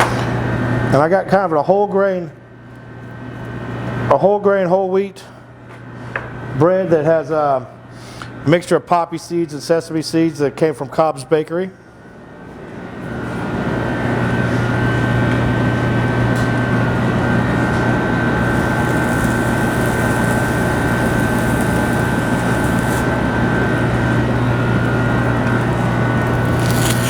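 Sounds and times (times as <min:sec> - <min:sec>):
machine running with hum and whine: 0:11.8 - 0:27.0.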